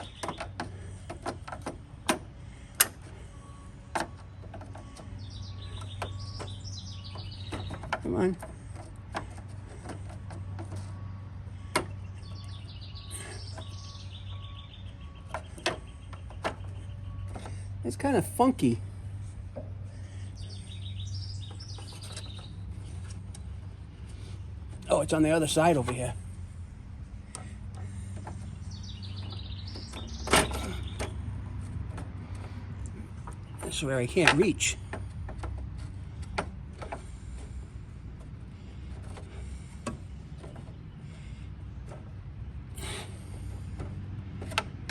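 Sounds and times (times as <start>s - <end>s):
bird chirping: 0.0s - 26.4s, 27.3s - 35.0s
steady low hum: 0.0s - 44.9s.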